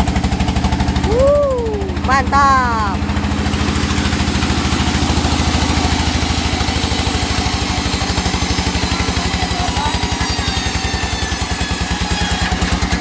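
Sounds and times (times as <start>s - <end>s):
sawmill engine running: 0.0s - 13.0s.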